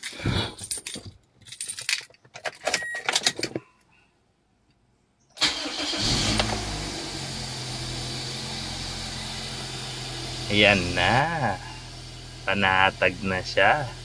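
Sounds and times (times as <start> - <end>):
clicks and rattles: 0.0 - 3.7
car engine starting and idling: 5.4 - 14.0.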